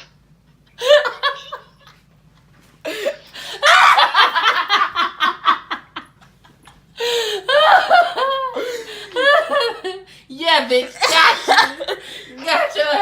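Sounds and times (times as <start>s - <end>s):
woman laughing hard: 0.8s - 1.9s, 2.9s - 6.4s, 7.0s - 10.0s.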